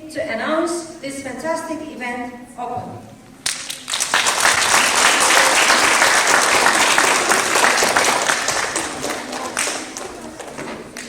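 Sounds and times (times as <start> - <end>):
audience applauding: 3.4 - 11.0.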